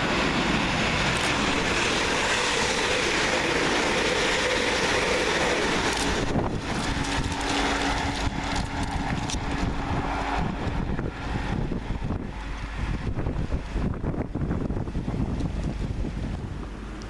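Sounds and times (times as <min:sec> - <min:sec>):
train wheel clicks: 0:00.0 - 0:10.4
train rushing past: 0:00.0 - 0:17.0.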